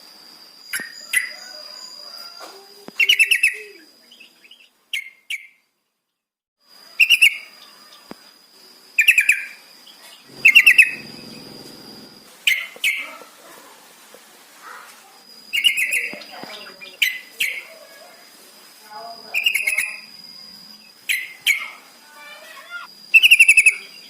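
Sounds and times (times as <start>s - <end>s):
thin steady high tone: 10.3s - 12.4s.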